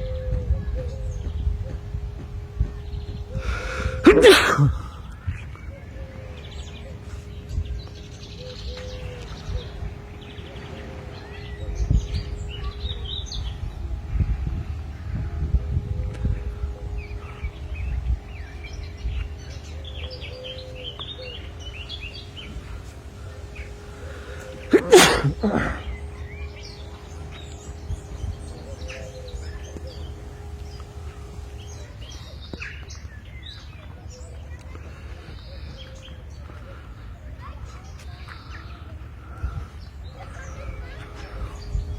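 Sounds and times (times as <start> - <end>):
small birds chirping: 0.0 - 15.1, 16.2 - 41.9
faint steady hum: 0.0 - 41.9
steady low rumble: 0.0 - 41.9.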